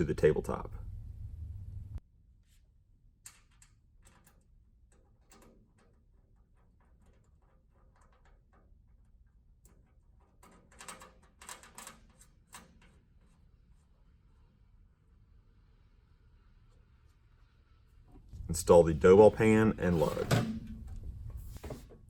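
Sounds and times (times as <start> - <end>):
parts clicking and tapping on metal: 3.2 - 13.4.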